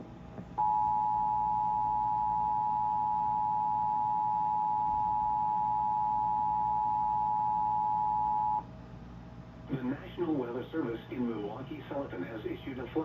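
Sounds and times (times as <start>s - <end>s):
two-tone alarm: 0.6s - 8.6s.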